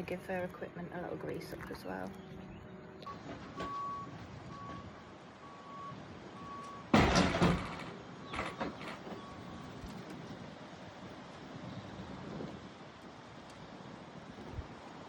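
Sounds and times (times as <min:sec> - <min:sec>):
vehicle reversing alarm beeping: 0:02.4 - 0:07.7, 0:08.3 - 0:09.8.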